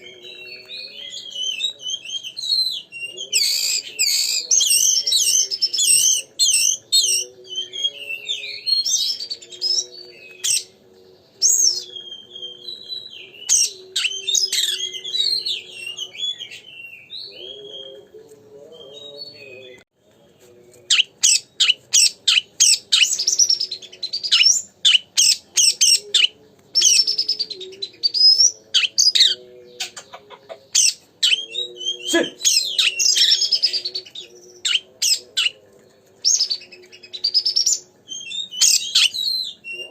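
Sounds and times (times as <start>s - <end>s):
songbird whistles and chirps: 0.0s - 18.1s, 20.4s - 35.6s, 36.2s - 39.9s.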